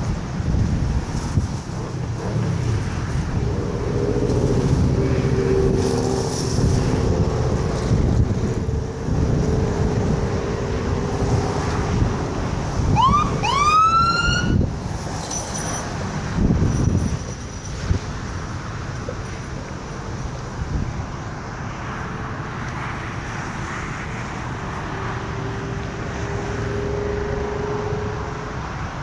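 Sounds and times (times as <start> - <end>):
wind rumbling on microphone: 0.0 - 29.0
steady droning tone: 2.2 - 12.7
rising siren whoops: 12.9 - 14.7.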